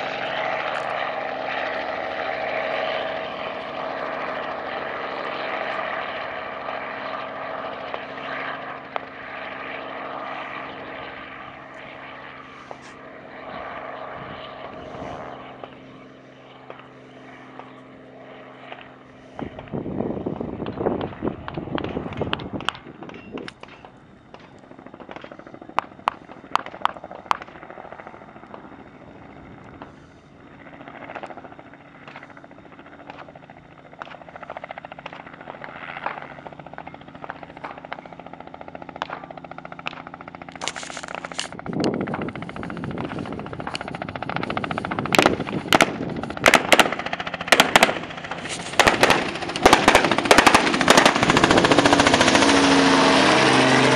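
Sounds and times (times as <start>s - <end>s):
helicopter drone: 0.0s - 53.9s
sharp cracks: 21.5s - 27.6s, 39.0s - 41.6s, 45.1s - 52.6s.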